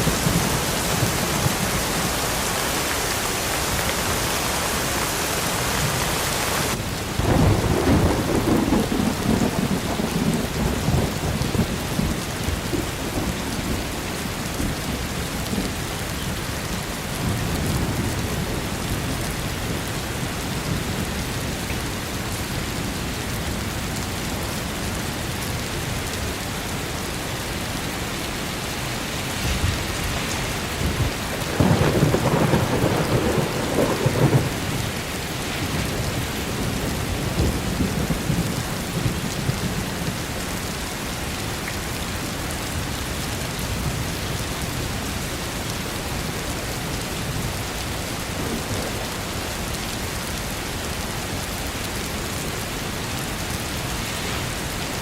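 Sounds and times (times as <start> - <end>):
steady rain: 0.0 - 55.0
rolling thunder rumble: 6.7 - 14.0, 29.2 - 40.3, 47.0 - 49.6.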